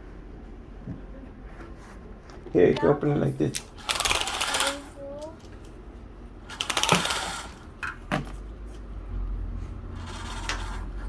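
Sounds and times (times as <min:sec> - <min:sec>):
window rattling and scraping: 0:09.8 - 0:11.0.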